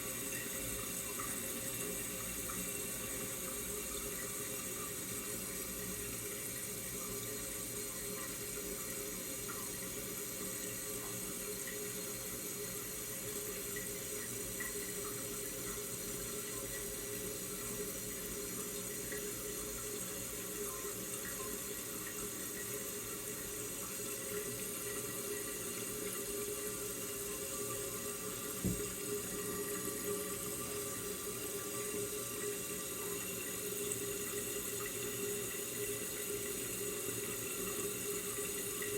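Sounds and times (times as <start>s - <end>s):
toilet cistern refilling: 0.0s - 38.9s
brief knock: 28.6s - 28.9s.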